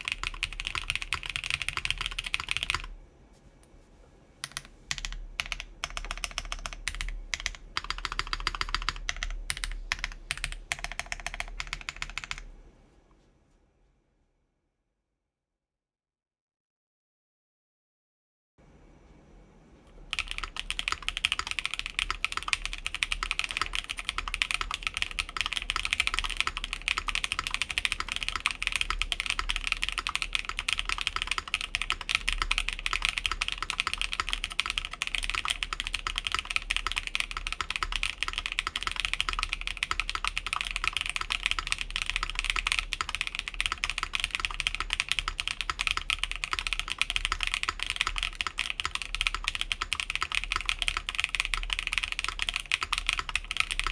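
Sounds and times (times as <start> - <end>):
mechanical keyboard typing: 0.0 - 2.9, 4.4 - 12.5, 20.0 - 53.9.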